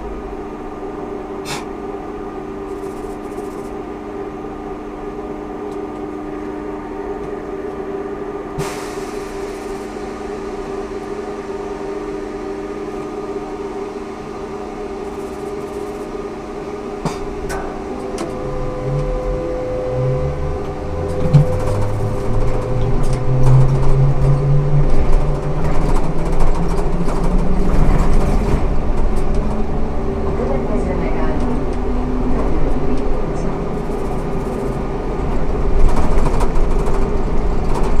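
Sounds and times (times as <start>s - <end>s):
traction drive whine rising: 0.0s - 38.0s
trolleybus electrical hum: 0.0s - 38.0s.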